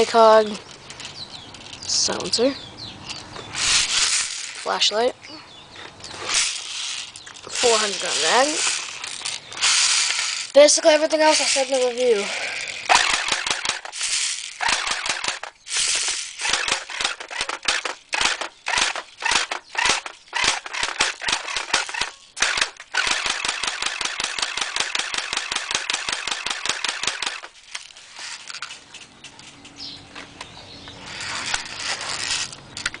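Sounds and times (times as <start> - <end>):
airsoft gun rapid firing: 9.6 - 10.3, 11.3 - 27.5.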